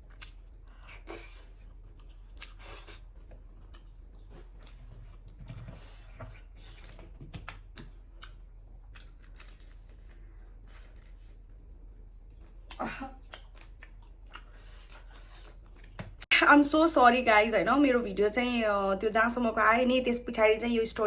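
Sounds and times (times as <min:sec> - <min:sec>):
chewing with clicks and crackles: 0:00.0 - 0:16.3.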